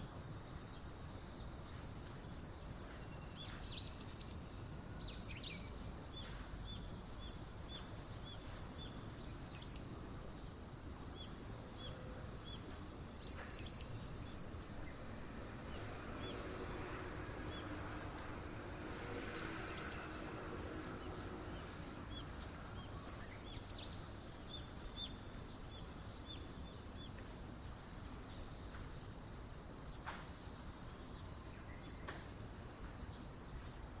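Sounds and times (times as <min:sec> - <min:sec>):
insects trilling: 0:00.0 - 0:34.0.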